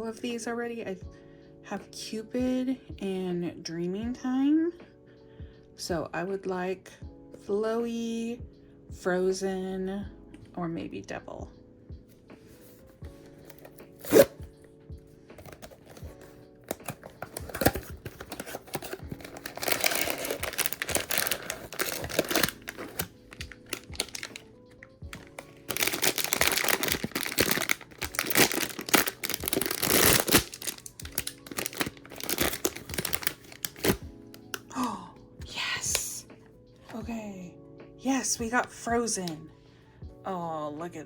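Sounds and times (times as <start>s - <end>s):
soft background music: 0.0s - 41.0s
packaging tearing and crinkling: 13.4s - 14.4s, 15.4s - 34.0s.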